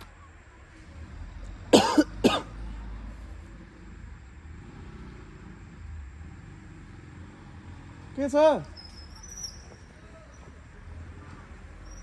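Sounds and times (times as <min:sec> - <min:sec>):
man coughing: 0:01.7 - 0:02.6.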